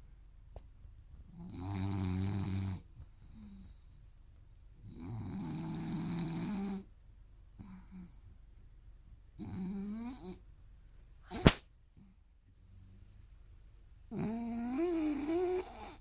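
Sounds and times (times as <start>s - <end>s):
rooster snoring: 1.4s - 3.8s, 4.8s - 6.9s, 9.4s - 10.4s, 14.1s - 16.0s.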